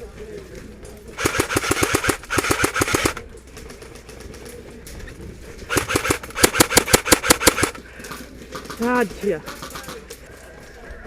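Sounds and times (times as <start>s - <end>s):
airsoft gun firing bursts: 1.2s - 3.9s, 5.7s - 7.8s.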